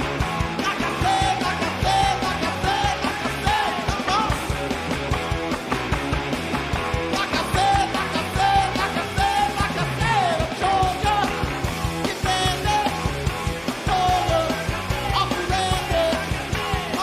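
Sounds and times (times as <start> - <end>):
fast drums: 0.0 - 17.0
guitars: 0.0 - 17.0
punk band playing live: 0.0 - 17.0
shouted sung lead vocal: 0.6 - 4.5, 7.1 - 11.5, 12.1 - 13.1, 13.8 - 17.0.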